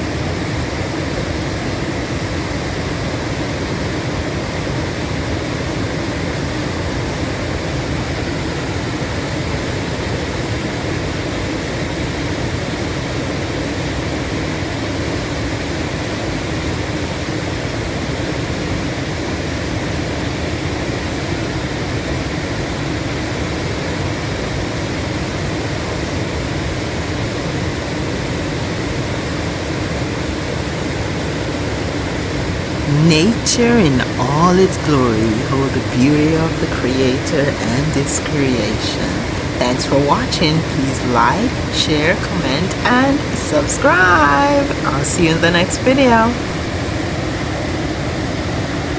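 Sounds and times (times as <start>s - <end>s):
waterfall roaring: 32.7s - 46.7s.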